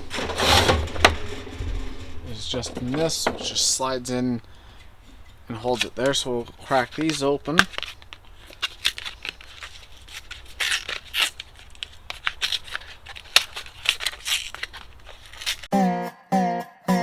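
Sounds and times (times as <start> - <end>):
battery packaging tearing: 5.5 - 15.7.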